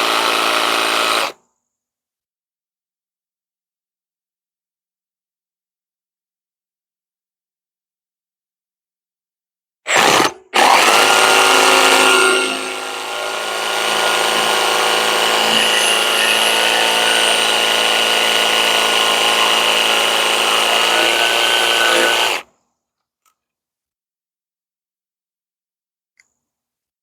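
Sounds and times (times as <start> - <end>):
power tool cutting wood: 0.0 - 1.4, 9.9 - 22.4.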